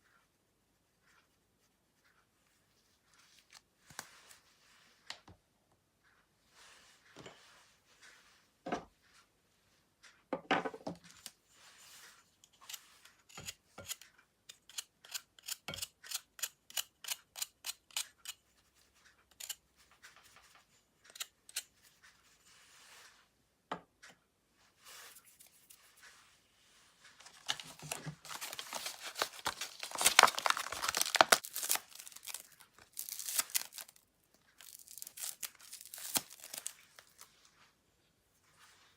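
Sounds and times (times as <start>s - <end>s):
slime squelching: 27.2s - 33.9s.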